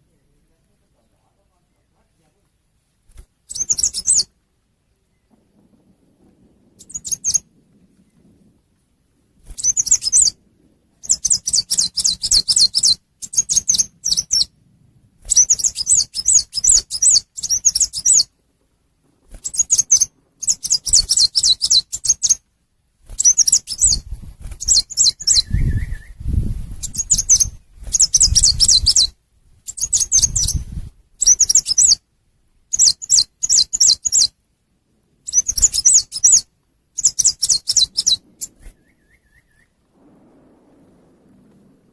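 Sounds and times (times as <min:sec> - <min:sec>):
songbird twittering: 0:03.4 - 0:04.3, 0:06.7 - 0:08.4, 0:09.5 - 0:14.6, 0:15.3 - 0:18.3, 0:19.4 - 0:22.4, 0:23.2 - 0:32.0, 0:32.7 - 0:34.4, 0:35.3 - 0:39.8
low rumble: 0:04.9 - 0:09.6, 0:10.2 - 0:11.2, 0:38.2 - 0:41.9.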